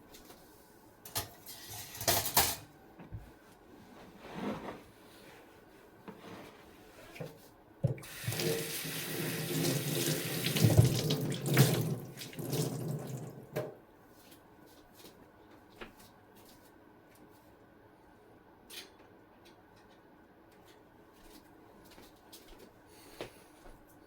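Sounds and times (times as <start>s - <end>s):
tap water running into sink: 7.8s - 13.6s.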